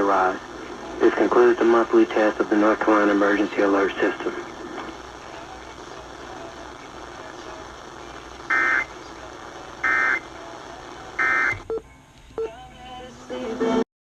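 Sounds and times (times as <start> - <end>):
radio hiss: 0.0 - 11.7
data tone bursts: 11.2 - 11.8.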